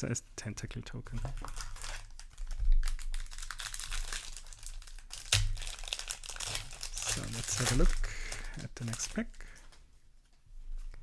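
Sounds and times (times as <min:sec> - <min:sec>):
foil wrapper crinkling: 0:01.3 - 0:09.8.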